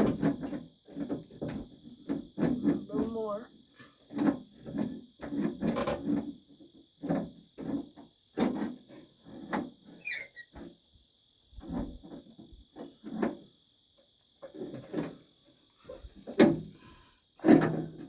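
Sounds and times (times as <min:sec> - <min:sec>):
crickets chirping: 0:00.0 - 0:18.0
short falling squeak: 0:10.0 - 0:10.5.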